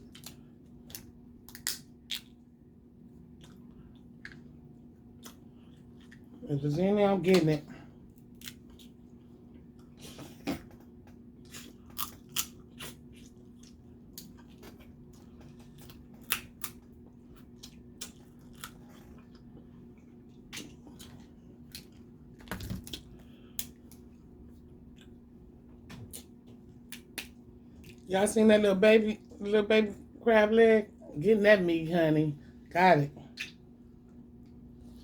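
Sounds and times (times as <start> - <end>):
faint steady hum: 0.0 - 35.0
crab shells cracking: 0.2 - 2.3
chewing: 3.3 - 6.4, 11.4 - 22.1, 26.0 - 28.1.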